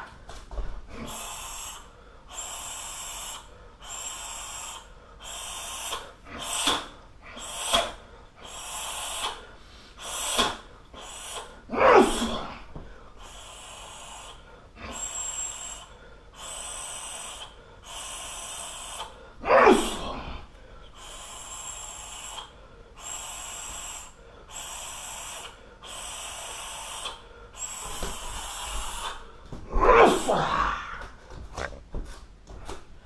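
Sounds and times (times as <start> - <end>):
heavy rhythmic breathing: 0.0 - 33.0.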